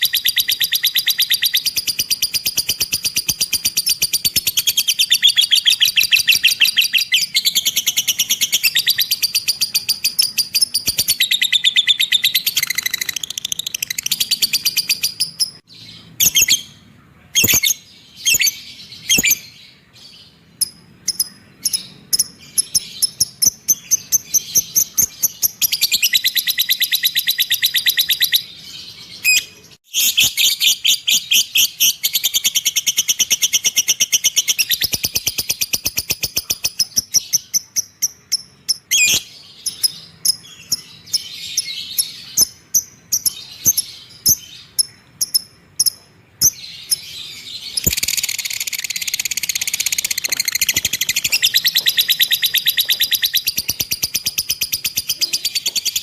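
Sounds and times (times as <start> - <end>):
bird rapid high chattering: 0.0 - 15.6, 47.7 - 56.0
bird chirps: 0.0 - 56.0.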